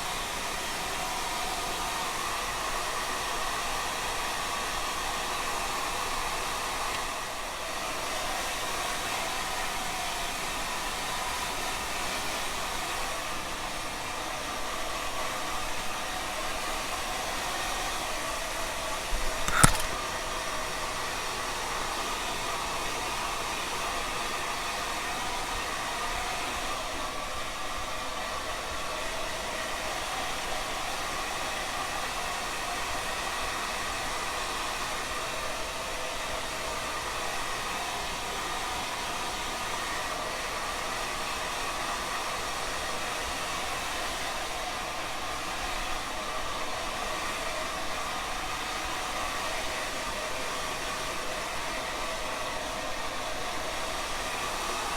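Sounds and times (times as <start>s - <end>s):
hair dryer running: 0.1s - 14.8s, 35.8s - 54.9s
sharp click: 19.2s - 20.0s.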